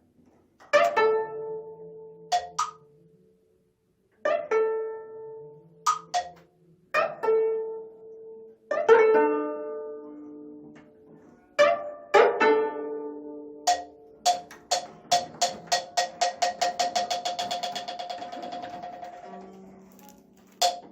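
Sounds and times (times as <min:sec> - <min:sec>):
plucked zither notes and chords: 0:00.7 - 0:03.0, 0:04.2 - 0:10.8, 0:11.6 - 0:20.9
sharp plucked accents: 0:02.3 - 0:02.9, 0:05.9 - 0:06.4, 0:11.6 - 0:18.9.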